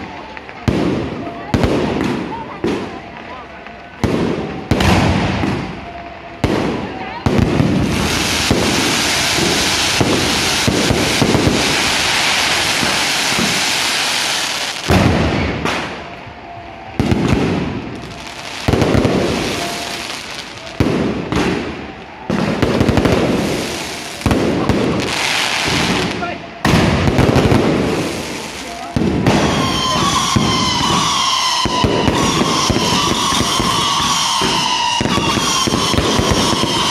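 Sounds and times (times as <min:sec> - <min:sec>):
bottle rockets crackling and hissing: 0:07.6 - 0:16.1, 0:17.9 - 0:36.9.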